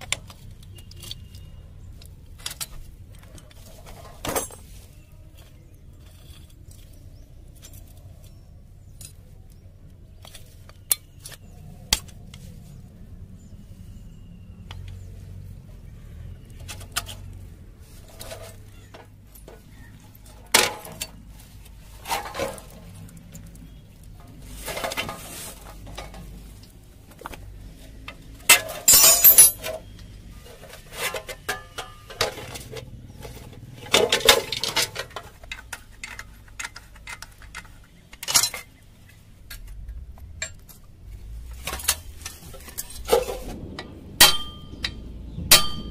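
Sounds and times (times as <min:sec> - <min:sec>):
metal tools clinking and clattering: 0:02.0 - 0:09.3, 0:16.6 - 0:21.2, 0:21.8 - 0:26.8, 0:28.4 - 0:45.9.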